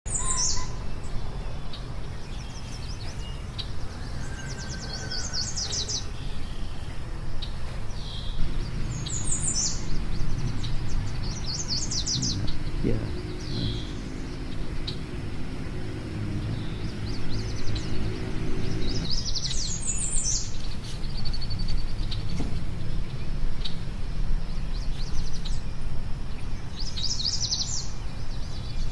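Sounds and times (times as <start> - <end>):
small birds chirping: 0.1 - 28.9
steady low rumble: 8.2 - 19.2.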